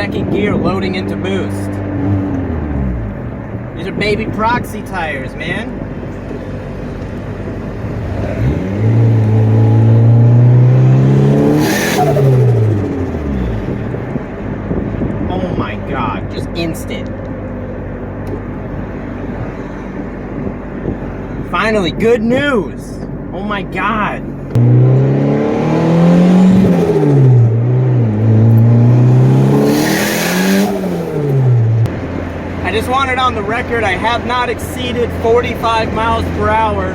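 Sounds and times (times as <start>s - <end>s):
turbocharged car engine revving: 0.0s - 4.9s, 6.3s - 15.7s, 23.8s - 36.9s.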